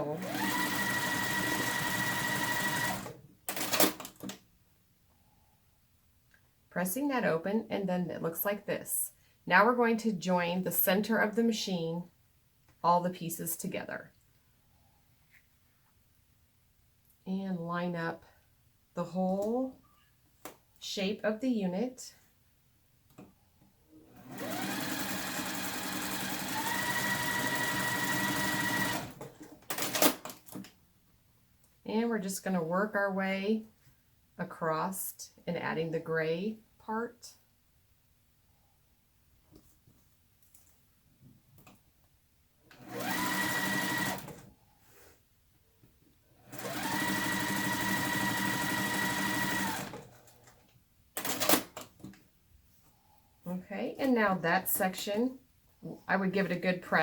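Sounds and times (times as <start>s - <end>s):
sewing machine motor whine: 0.0s - 3.8s, 24.2s - 29.2s, 42.8s - 44.4s, 46.5s - 50.1s.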